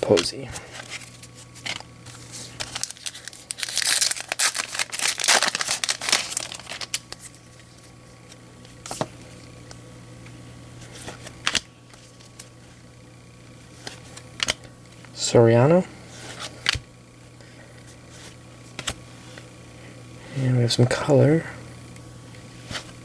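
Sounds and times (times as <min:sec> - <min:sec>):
foil wrapper crinkling and tearing: 0:00.8 - 0:09.0.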